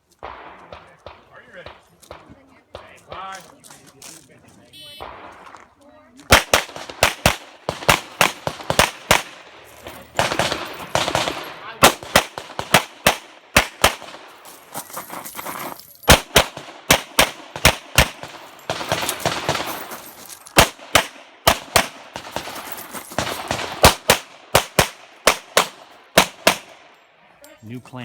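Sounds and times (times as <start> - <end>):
handgun shots: 4.8 - 9.4, 10.1 - 14.4, 16.1 - 19.9, 20.6 - 22.6, 23.2 - 27.0.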